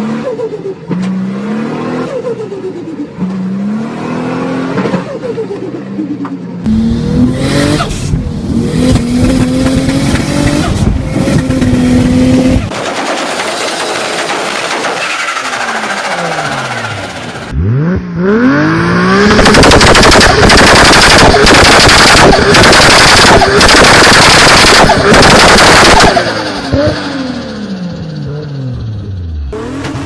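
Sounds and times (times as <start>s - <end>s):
car engines revving: 0.0s - 30.0s
turbo flutter chatter: 19.4s - 26.2s.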